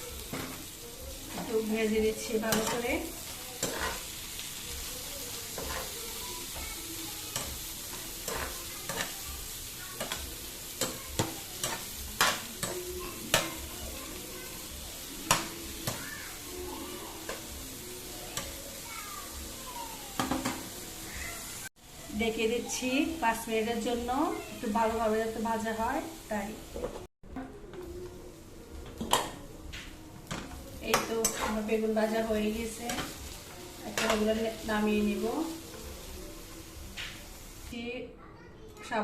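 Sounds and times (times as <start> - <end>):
vegetables sizzling in hot oil: 0.0 - 27.1, 27.7 - 37.9
utensil scraping a pan: 2.4 - 4.2, 5.5 - 6.4, 7.3 - 9.2, 30.9 - 34.6.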